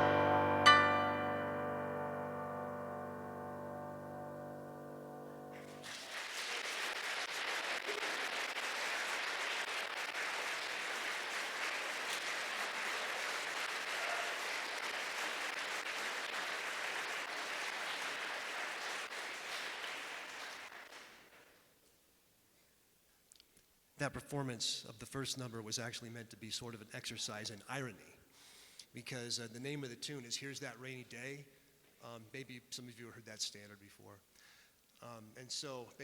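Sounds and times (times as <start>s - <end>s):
music chord ringing: 0.0s - 5.9s
audience applauding: 5.5s - 21.5s.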